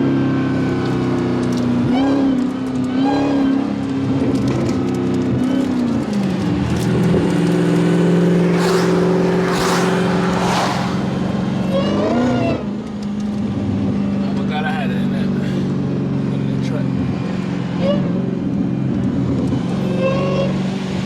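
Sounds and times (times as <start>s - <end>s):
car engine running: 0.1s - 21.0s
short rushing hisses: 8.4s - 11.4s.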